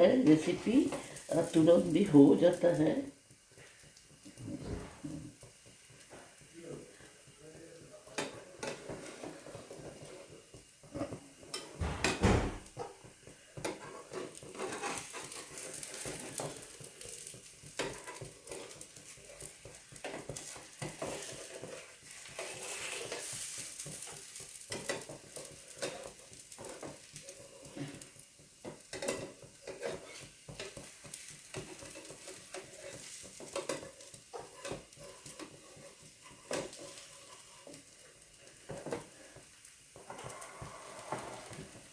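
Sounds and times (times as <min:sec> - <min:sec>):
batter sizzling on a pan: 0:00.0 - 0:41.9
utensil tapping and scraping pan: 0:00.2 - 0:41.9
loud knock on pan: 0:11.8 - 0:12.7.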